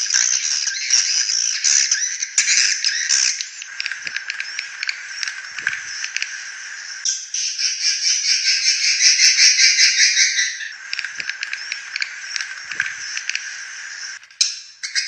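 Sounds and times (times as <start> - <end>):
buzzing bird trill: 0.0 - 15.0
swiftlet chirps and clicks: 3.1 - 7.0, 10.7 - 14.2.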